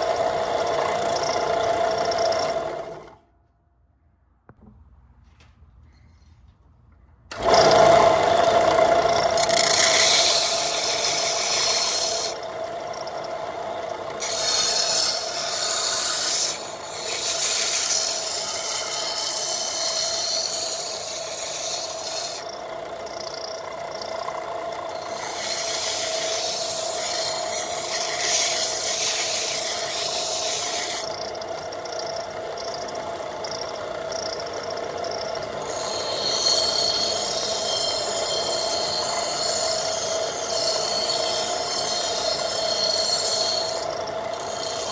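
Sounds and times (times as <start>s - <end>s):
sanding wood: 14.2s - 22.4s, 25.0s - 31.1s.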